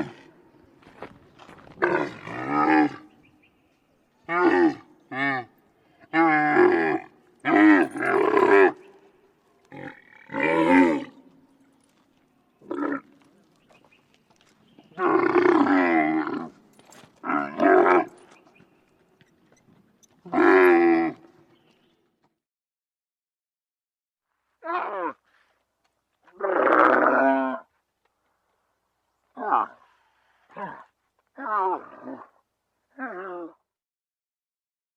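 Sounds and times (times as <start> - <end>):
camel calling: 1.8 - 3.3, 4.2 - 11.9, 14.8 - 21.6.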